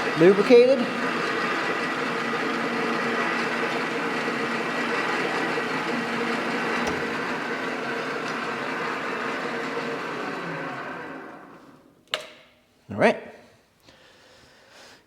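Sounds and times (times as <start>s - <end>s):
metal lathe running: 0.0s - 11.8s.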